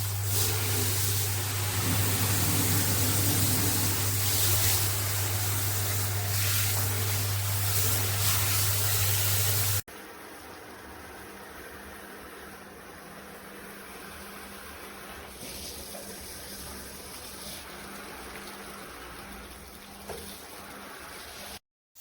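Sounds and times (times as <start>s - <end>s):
shower head spraying water: 0.0s - 9.8s.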